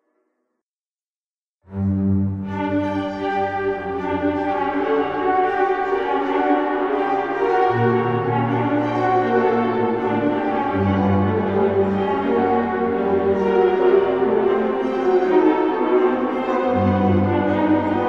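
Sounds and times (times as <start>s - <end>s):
ghostly orchestral music: 1.7s - 18.0s.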